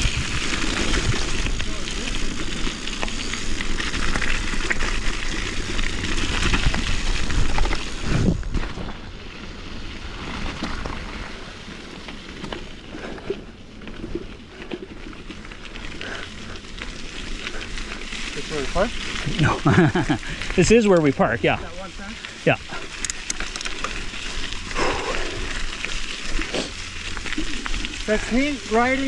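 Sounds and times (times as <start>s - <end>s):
small bike clicks: 0.0s - 21.2s, 22.2s - 29.0s
bike tyres on gravel: 0.0s - 29.0s
wind rushing over microphone: 6.5s - 8.8s.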